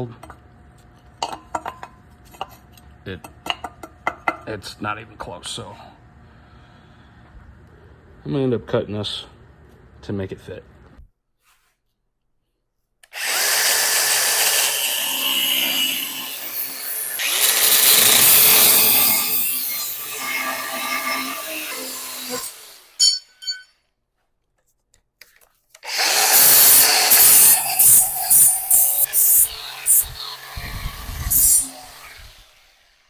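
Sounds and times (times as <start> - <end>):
power tool cutting steel: 13.1 - 23.6, 25.8 - 33.0.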